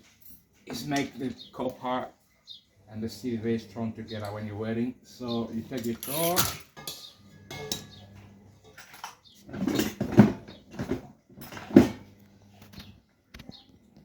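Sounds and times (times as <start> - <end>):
scraping and rustling handling noises: 5.5 - 13.6.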